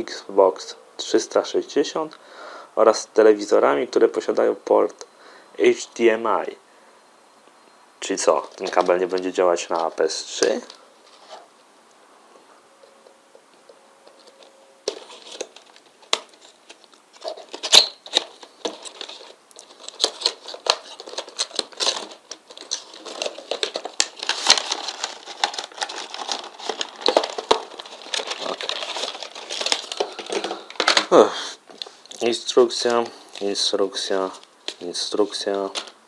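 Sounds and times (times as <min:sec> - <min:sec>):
packaging crinkling and rustling: 0:08.1 - 0:11.7, 0:12.8 - 0:36.0
packaging clicks and snaps: 0:13.0 - 0:31.1.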